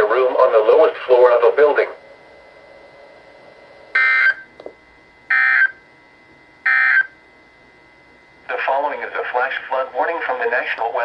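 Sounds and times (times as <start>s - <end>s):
radio hiss: 0.0s - 2.0s, 8.5s - 11.0s
warbling data tone bursts: 4.0s - 4.5s, 5.3s - 5.8s, 6.7s - 7.1s.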